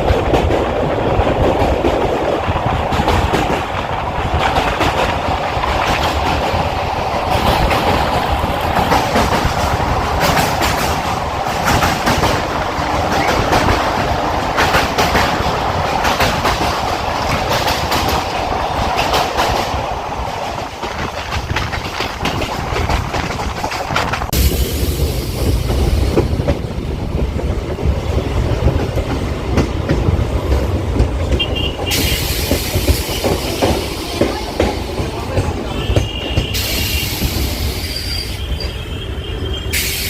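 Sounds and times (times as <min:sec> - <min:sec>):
wheels clattering over rail joints: 0:00.0 - 0:24.3
train rumble and hum: 0:00.0 - 0:40.0.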